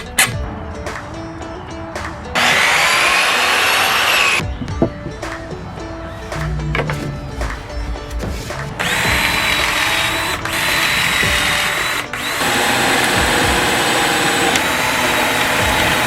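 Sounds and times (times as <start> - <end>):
power tool motor whining: 2.4 - 4.4, 8.8 - 16.0.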